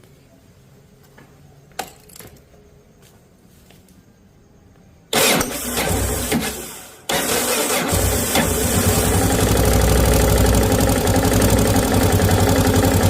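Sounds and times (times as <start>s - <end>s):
motorcycle engine starting: 5.1s - 13.0s.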